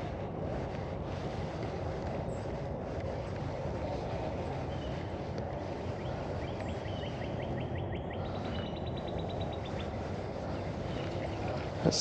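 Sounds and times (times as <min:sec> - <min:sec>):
outdoor background noise: 0:00.0 - 0:12.0.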